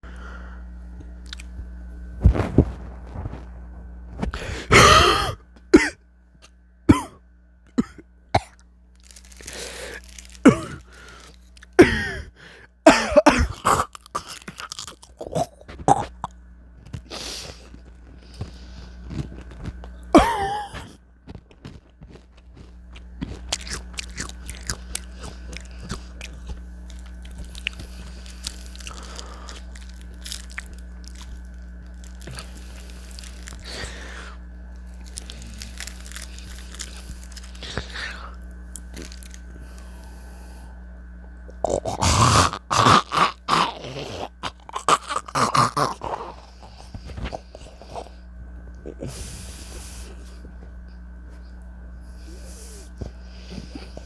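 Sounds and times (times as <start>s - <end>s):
crunchy chewing of chips: 0.1s - 54.0s
person coughing: 4.4s - 6.0s, 6.9s - 7.2s, 7.8s - 8.6s, 9.6s - 14.4s, 20.1s - 21.0s
throat clearing: 4.4s - 6.0s, 6.9s - 7.2s, 10.4s - 11.0s, 11.6s - 14.4s, 20.1s - 21.0s.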